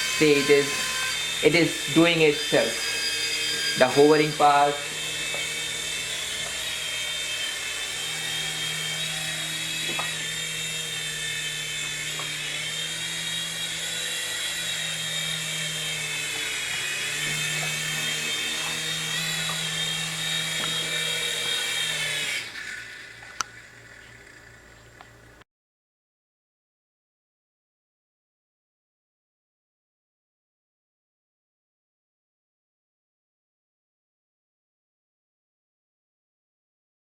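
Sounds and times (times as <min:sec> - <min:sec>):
toy helicopter rotor whine: 0:00.0 - 0:25.4.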